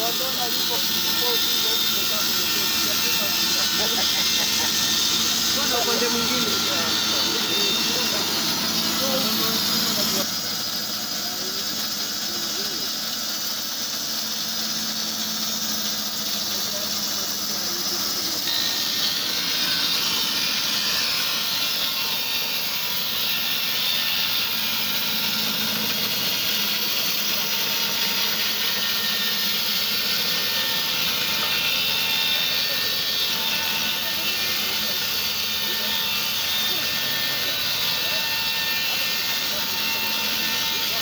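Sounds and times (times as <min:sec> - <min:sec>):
band sawmill hiss and whine: 0:00.0 - 0:41.0.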